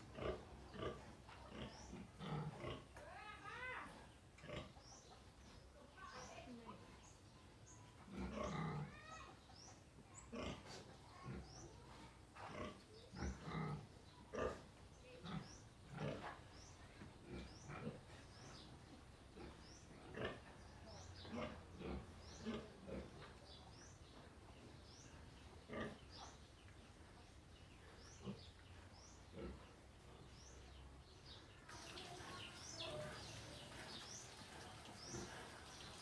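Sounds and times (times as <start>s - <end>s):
piglets grunting: 0.0s - 2.9s, 8.0s - 9.1s, 12.4s - 16.3s, 29.3s - 29.7s, 31.7s - 36.0s.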